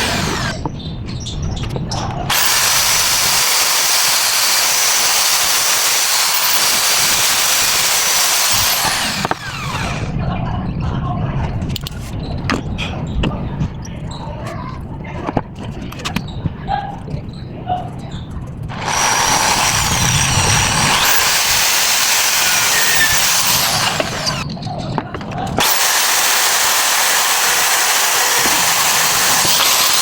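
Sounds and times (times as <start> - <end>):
power tool motor running: 0.0 - 0.6, 2.3 - 10.1, 18.7 - 24.4, 25.6 - 30.0.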